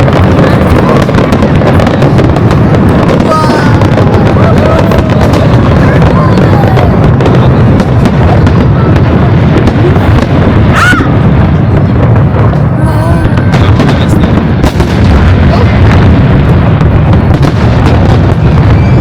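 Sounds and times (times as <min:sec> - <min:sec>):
fireworks booming and crackling: 0:00.0 - 0:19.0
firework whistle: 0:17.3 - 0:19.0.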